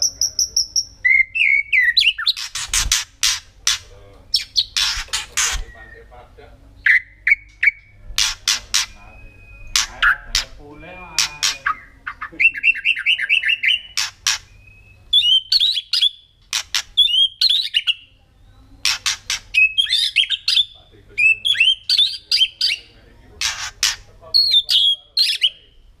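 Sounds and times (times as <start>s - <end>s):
bird singing whistled notes: 0.0s - 2.4s, 5.6s - 6.1s, 8.8s - 16.3s, 19.6s - 22.9s.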